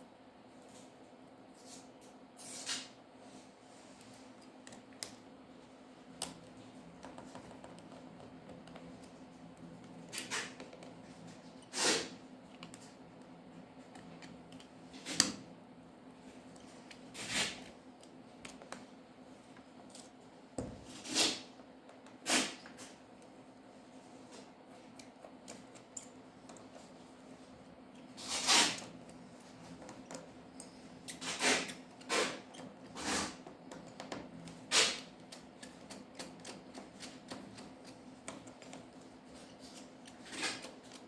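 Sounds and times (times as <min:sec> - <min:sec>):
hand tools clicking and scraping: 0:24.3 - 0:27.0, 0:28.0 - 0:41.0.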